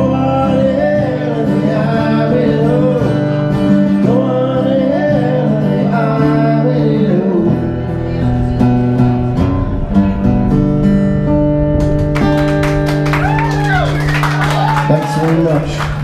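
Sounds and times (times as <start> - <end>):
man singing: 0.0 - 8.6
acoustic guitar strumming: 0.0 - 16.0.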